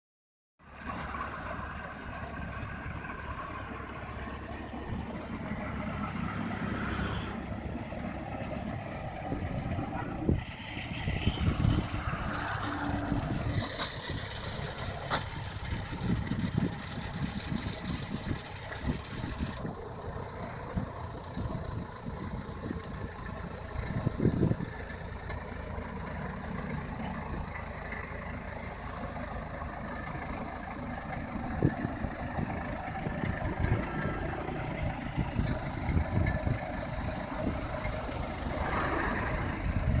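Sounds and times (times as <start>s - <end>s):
engine running: 0.6s - 40.0s.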